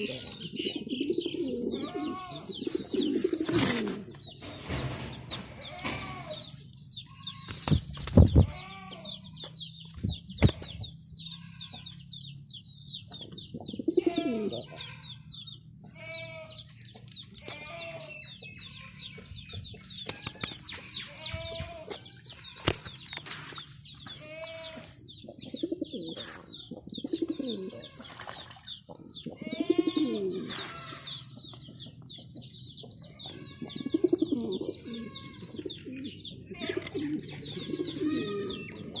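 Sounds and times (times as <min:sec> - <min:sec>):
pigeon cooing: 0:00.0 - 0:04.5, 0:13.5 - 0:14.7, 0:25.3 - 0:28.1, 0:29.2 - 0:39.0
small birds chirping: 0:00.0 - 0:39.0.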